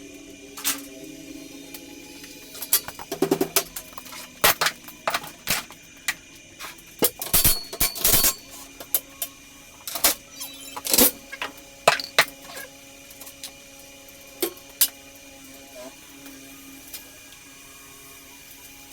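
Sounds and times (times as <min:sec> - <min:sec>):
metal tools clinking and knocking: 0:02.6 - 0:06.2, 0:07.1 - 0:08.5, 0:10.9 - 0:12.7.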